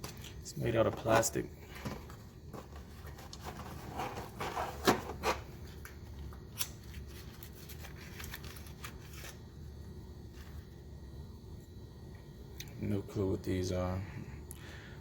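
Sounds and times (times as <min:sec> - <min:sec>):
packaging rustling: 0:01.0 - 0:09.4.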